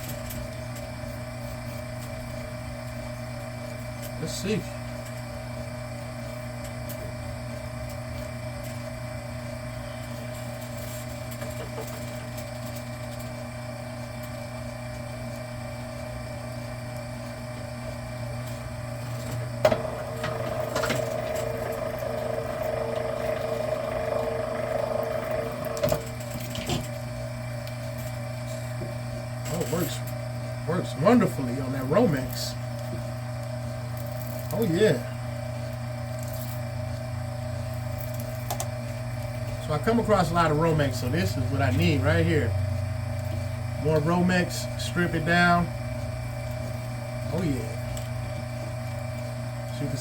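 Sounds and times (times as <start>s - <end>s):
wire stripper motor humming: 16.4s - 50.0s
cable pulled through stripper whirring: 19.0s - 26.6s.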